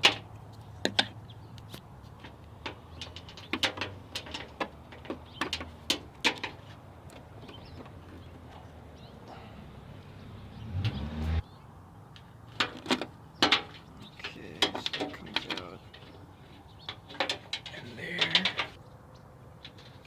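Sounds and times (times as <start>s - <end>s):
clicks knocks and scrapes: 12.5s - 18.8s.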